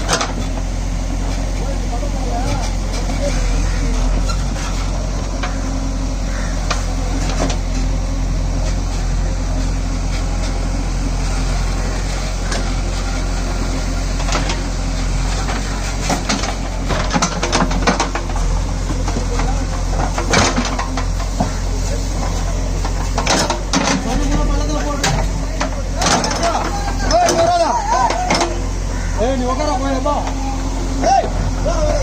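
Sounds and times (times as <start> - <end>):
heavy diesel machinery running: 0.0 - 32.0
knocks and clatter: 15.4 - 21.6, 22.2 - 28.6.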